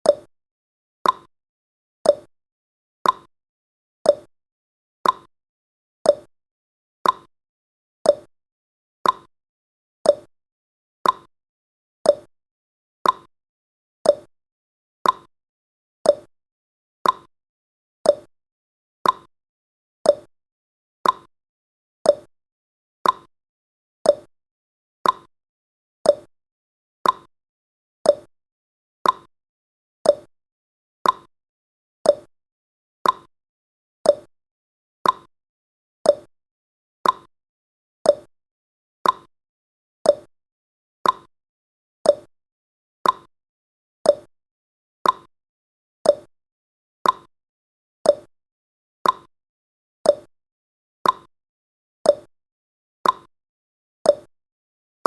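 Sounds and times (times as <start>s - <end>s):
timer ticking: 0.0s - 0.3s, 1.0s - 1.3s, 2.1s - 2.3s, 3.0s - 3.3s, 4.1s - 4.3s, 5.0s - 5.3s, 6.1s - 6.3s, 7.0s - 7.3s, 8.1s - 8.3s, 9.0s - 9.3s, 10.1s - 10.3s, 11.0s - 11.3s, 12.1s - 12.3s, 13.0s - 13.3s, 14.0s - 14.3s, 15.0s - 15.3s, 16.1s - 16.3s, 17.0s - 17.3s, 18.1s - 18.3s, 19.0s - 19.3s, 20.1s - 20.3s, 21.0s - 21.3s, 22.1s - 22.3s, 23.0s - 23.3s, 24.0s - 24.3s, 25.0s - 25.3s, 26.0s - 26.3s, 27.0s - 27.3s, 28.0s - 28.3s, 29.0s - 29.3s, 30.0s - 30.3s, 31.0s - 31.3s, 32.0s - 32.3s, 33.0s - 33.3s, 34.0s - 34.3s, 35.0s - 35.3s, 36.0s - 36.3s, 37.0s - 37.3s, 38.0s - 38.3s, 39.0s - 39.3s, 40.0s - 40.3s, 41.0s - 41.3s, 42.0s - 42.3s, 43.0s - 43.3s, 44.1s - 44.3s, 45.0s - 45.3s, 46.0s - 46.3s, 47.0s - 47.3s, 48.1s - 48.3s, 49.0s - 49.3s, 50.1s - 50.3s, 51.0s - 51.3s, 52.1s - 52.3s, 53.0s - 53.3s, 54.1s - 54.3s.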